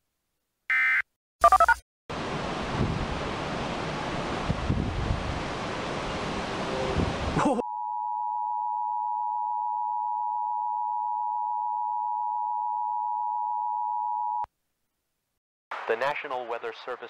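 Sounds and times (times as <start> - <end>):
rushing noise: 2.1 - 7.4.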